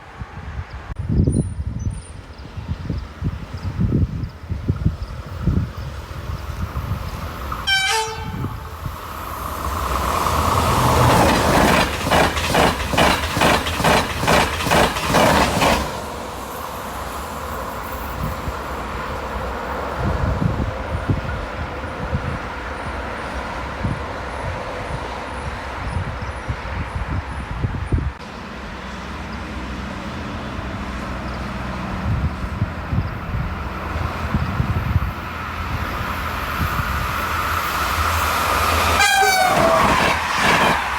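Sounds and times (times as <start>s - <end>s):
train rumble: 0.0s - 40.9s
train horn toot: 7.6s - 8.8s, 38.8s - 40.7s
train wheels clattering over rail joints: 9.6s - 16.2s, 38.7s - 40.9s.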